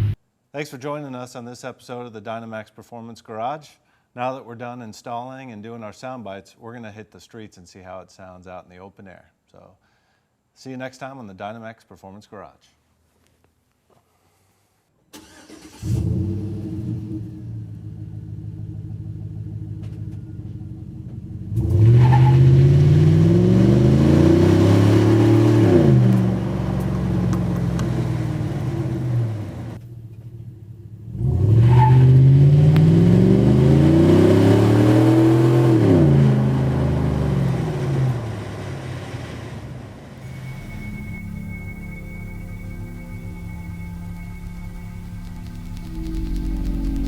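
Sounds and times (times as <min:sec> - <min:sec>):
truck exhaust accelerating: 0:15.8 - 0:47.0.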